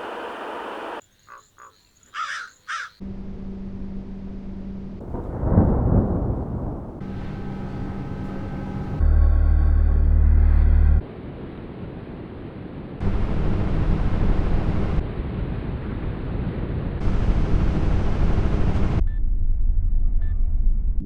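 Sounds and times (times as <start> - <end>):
crow-like caws: 1.3 - 3.0
loud deep drone: 3.0 - 11.0, 13.0 - 20.1
low humming drone: 3.0 - 21.0
low rumble: 3.0 - 21.0.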